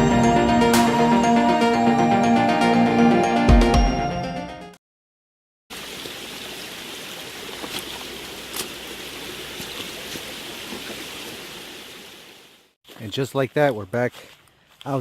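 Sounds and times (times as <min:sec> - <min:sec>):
running water rushing: 0:05.7 - 0:12.8.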